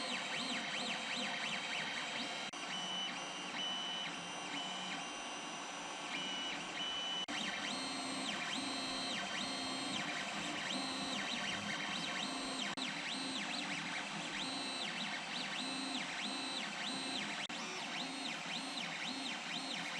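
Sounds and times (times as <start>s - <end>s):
printer stepper motors whining: 0.0s - 19.9s.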